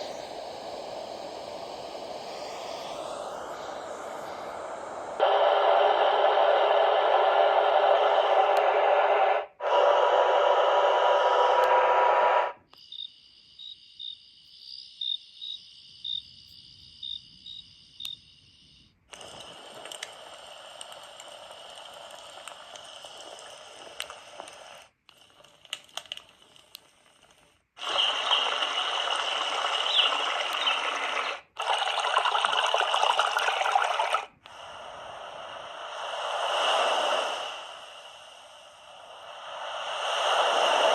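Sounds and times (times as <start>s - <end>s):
faint hiss: 0.0s - 31.6s, 33.2s - 40.9s
steady rushing water-like noise: 34.6s - 40.9s
breaking wave sound: 35.8s - 40.9s.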